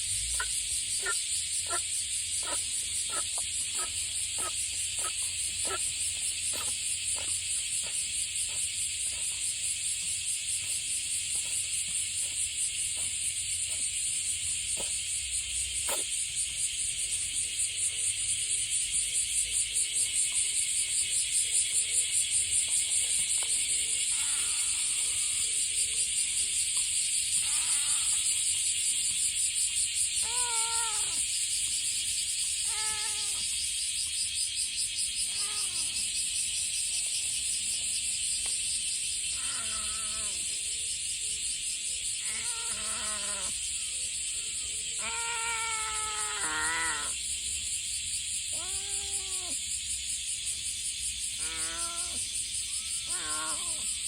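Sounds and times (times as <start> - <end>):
high insect chorus: 0.0 - 54.0
cat meowing: 30.2 - 31.2, 32.6 - 33.4, 35.3 - 36.0, 42.2 - 43.5, 45.0 - 47.2, 48.5 - 49.6, 51.4 - 52.2, 53.0 - 53.8.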